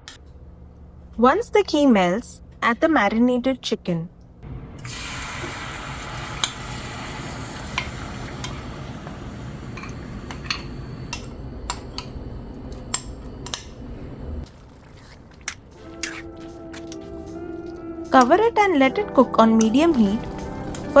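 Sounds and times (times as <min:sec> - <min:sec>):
chicken sizzling in oil: 0:04.8 - 0:11.8, 0:19.5 - 0:21.0.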